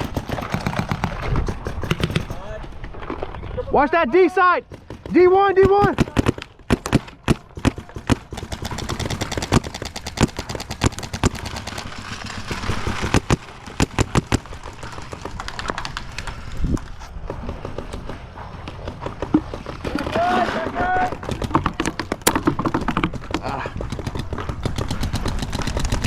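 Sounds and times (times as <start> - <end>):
paintball markers firing: 0.0 - 2.6, 4.7 - 16.6, 21.0 - 26.0.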